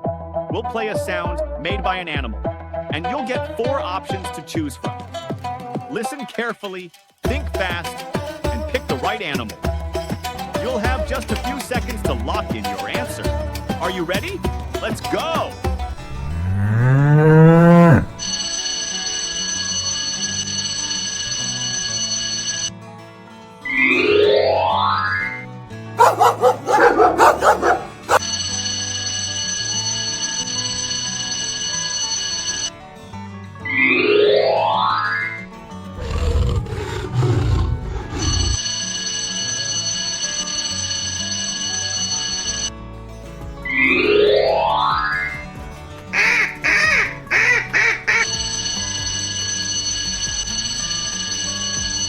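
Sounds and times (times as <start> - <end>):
background music: 0.0 - 52.0
animal roaring: 16.0 - 18.2, 36.0 - 38.6
cow mooing: 16.1 - 18.2, 36.0 - 38.6
high electronic ringing tone: 17.9 - 22.7, 28.2 - 32.7, 38.6 - 42.7, 48.3 - 52.0
high bell-like ringing tone: 48.6 - 52.0.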